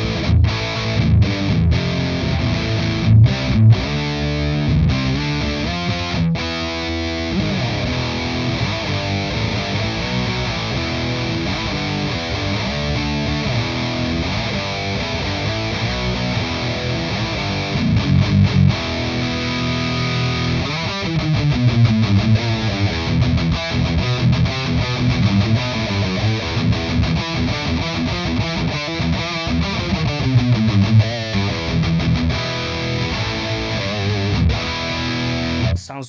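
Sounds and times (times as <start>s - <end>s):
distorted electric guitar riff: 0.0s - 36.0s.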